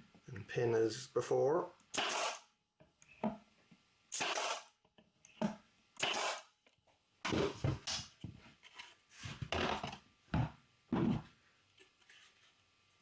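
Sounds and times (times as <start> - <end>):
pin nailer firing: 2.0 - 2.4, 4.2 - 4.7, 6.0 - 6.5.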